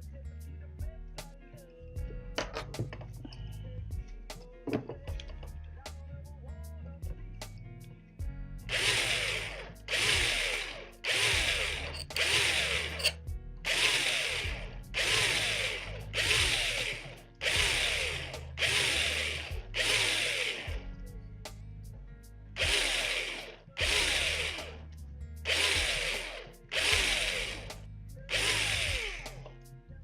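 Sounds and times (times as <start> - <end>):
faint background music: 0.0 - 30.0
electric drill drilling into metal: 8.7 - 20.8, 22.6 - 24.9, 25.5 - 29.5.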